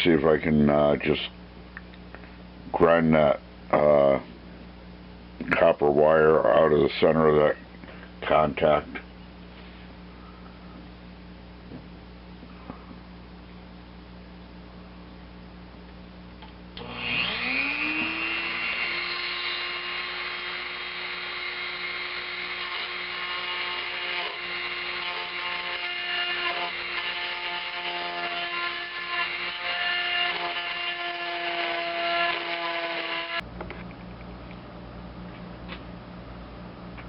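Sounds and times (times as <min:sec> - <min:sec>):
rotary tool grinding metal: 0:16.8 - 0:33.4.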